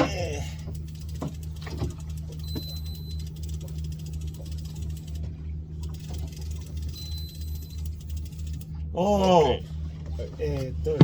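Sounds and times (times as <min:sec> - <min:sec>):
boat engine idling: 0:00.0 - 0:11.0
high beeps: 0:06.9 - 0:07.8.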